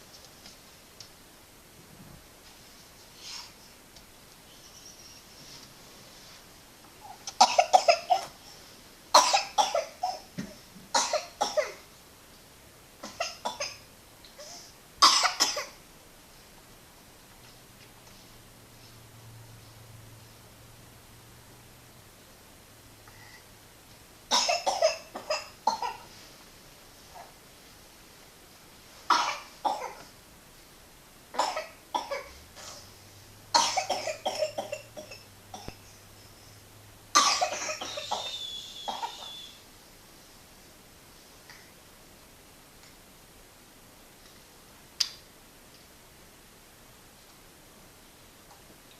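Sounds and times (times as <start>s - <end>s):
person coughing: 37.2s - 39.4s.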